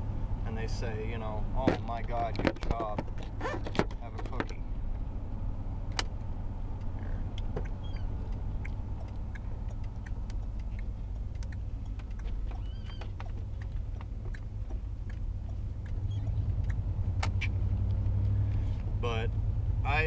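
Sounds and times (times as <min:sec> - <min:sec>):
car engine and road rumble: 0:00.0 - 0:20.0
faint squeaks: 0:06.9 - 0:08.3, 0:12.2 - 0:13.6, 0:15.8 - 0:16.6.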